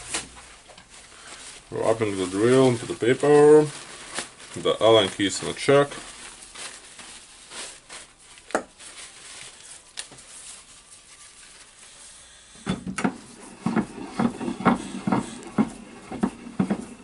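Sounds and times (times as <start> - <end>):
paper rustling: 0.0 - 12.2
drill knocking and rattling: 12.7 - 17.0.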